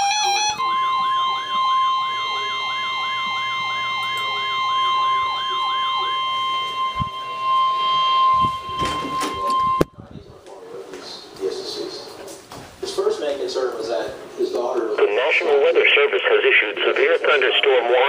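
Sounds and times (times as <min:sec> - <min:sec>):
fast-warbling siren: 0:00.0 - 0:09.8
steady high alert tone: 0:00.0 - 0:09.9.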